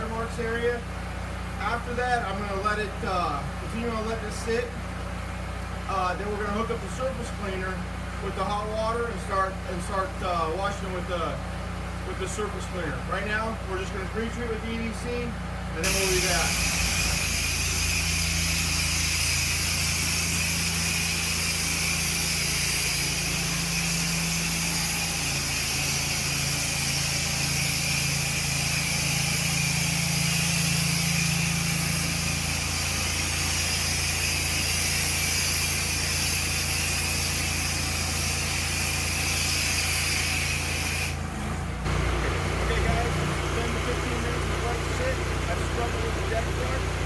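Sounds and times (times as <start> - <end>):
pressure washer engine running: 0.0 - 47.0
hiss of spraying water: 15.8 - 41.2.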